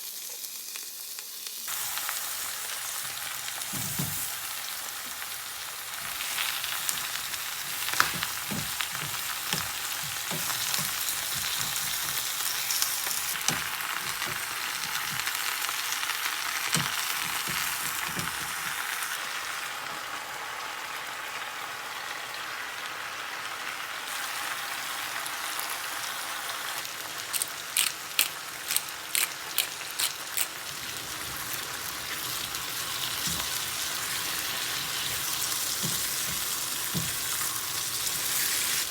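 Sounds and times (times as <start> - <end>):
food sizzling in a pan: 0.0 - 38.9
knocks of stirring: 6.8 - 15.4, 33.1 - 37.5.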